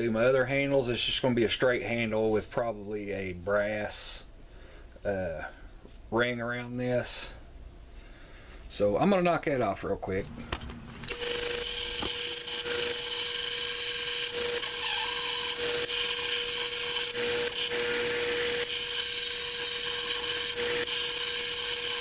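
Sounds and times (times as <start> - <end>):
power grinder grinding metal: 11.0 - 22.0.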